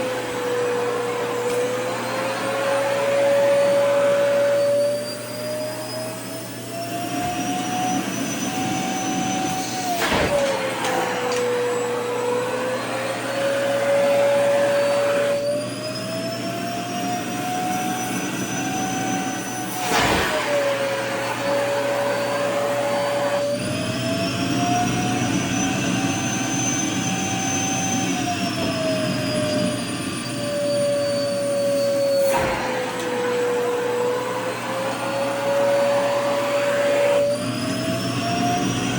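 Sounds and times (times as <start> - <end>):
vacuum cleaner running: 0.0 - 38.9
click: 1.4 - 1.6, 10.3 - 11.5.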